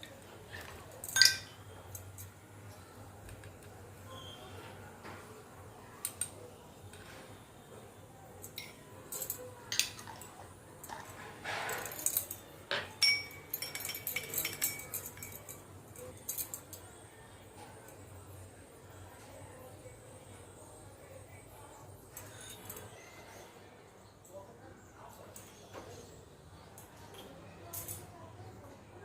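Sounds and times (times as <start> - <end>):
spoon clinking and scraping in dish: 0.6 - 2.3, 8.5 - 16.1.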